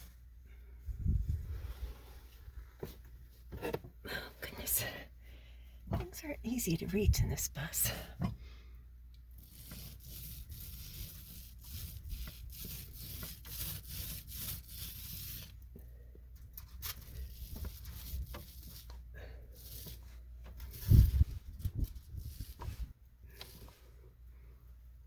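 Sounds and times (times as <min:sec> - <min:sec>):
paint brush rubbing strokes: 0:09.4 - 0:15.7, 0:16.8 - 0:24.0.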